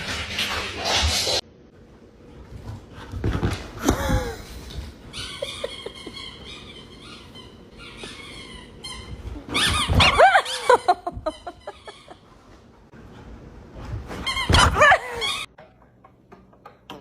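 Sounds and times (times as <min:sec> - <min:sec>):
dog squeaking and whining: 0:05.1 - 0:10.9, 0:14.2 - 0:15.5.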